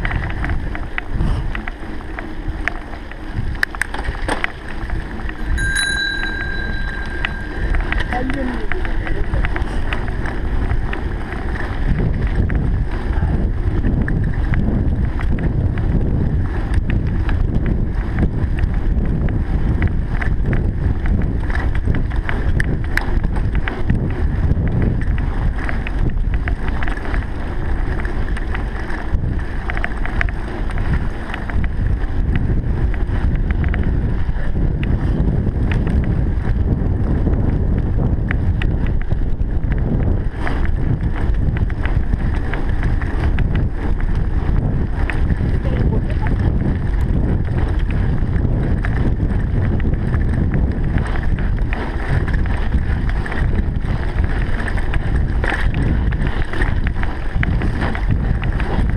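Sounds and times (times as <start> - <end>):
wind buffeting microphone: 0.0 - 58.9.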